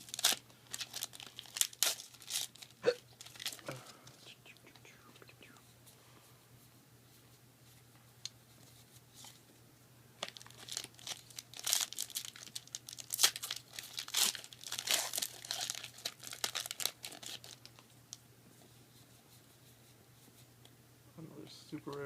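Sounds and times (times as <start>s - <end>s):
foil wrapper tearing and crinkling: 0.0s - 3.8s, 10.2s - 17.8s.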